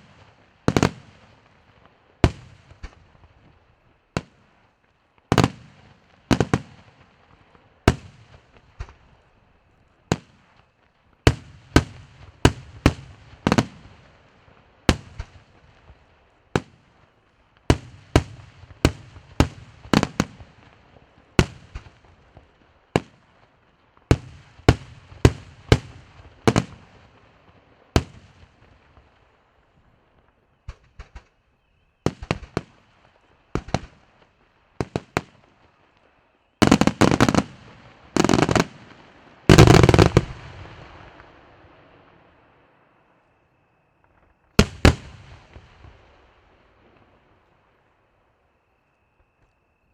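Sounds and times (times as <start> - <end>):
fireworks bangs: 0.0 - 4.6, 5.3 - 9.2, 11.3 - 14.3, 17.7 - 29.3, 32.1 - 36.0, 36.6 - 42.9, 44.0 - 47.4.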